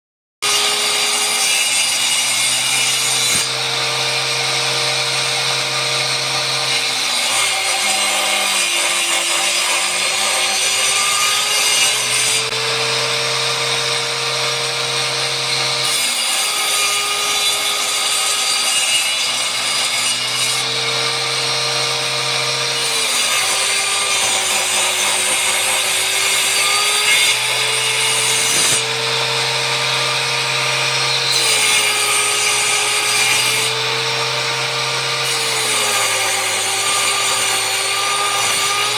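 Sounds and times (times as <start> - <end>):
power saw cutting wood: 0.4 - 38.9.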